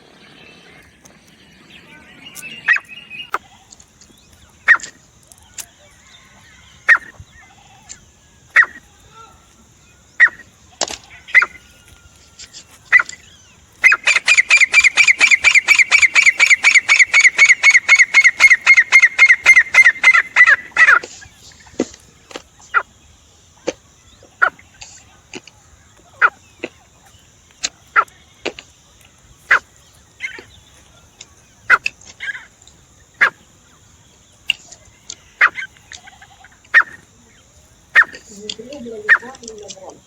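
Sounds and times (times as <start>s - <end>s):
francolin calling: 0.0s - 40.0s.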